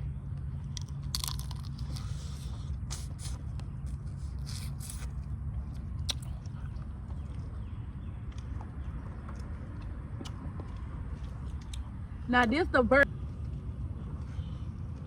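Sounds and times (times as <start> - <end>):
steady low rumble: 0.0 - 15.0
crab shells cracking: 0.8 - 2.0.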